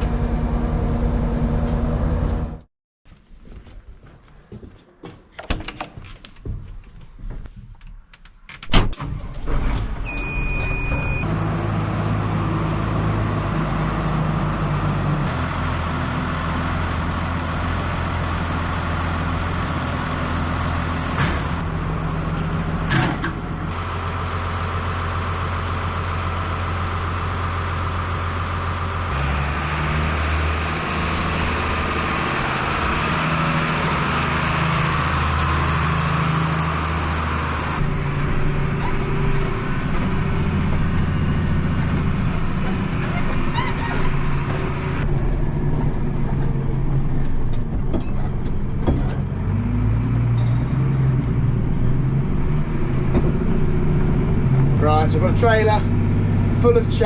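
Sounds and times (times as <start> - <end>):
tractor engine running: 9.0 - 57.0
short beep: 10.1 - 11.3.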